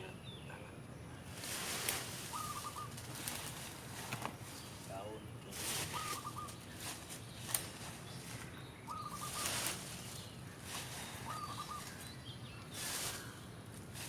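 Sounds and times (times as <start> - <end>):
soft hissing swish: 1.3 - 8.0, 9.2 - 12.0, 12.7 - 14.0
bird call with trill: 2.3 - 3.0, 5.8 - 6.6, 8.9 - 9.7, 11.2 - 12.0.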